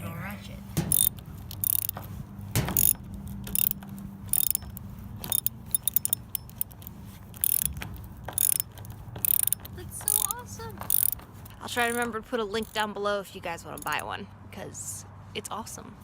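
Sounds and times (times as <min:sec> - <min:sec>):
ratcheting tool clicking: 0:00.8 - 0:12.8.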